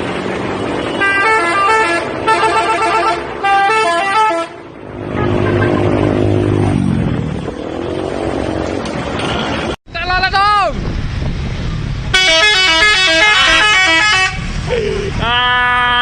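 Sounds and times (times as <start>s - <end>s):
bus running noise: 0.0s - 16.0s
multi-tone musical bus horn: 0.9s - 6.0s, 12.1s - 14.6s.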